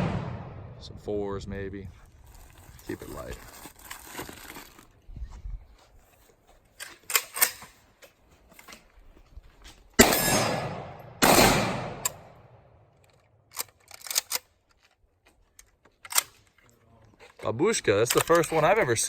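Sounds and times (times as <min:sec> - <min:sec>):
loud gunshot bangs with echo: 0:00.0 - 0:00.9, 0:10.0 - 0:12.0.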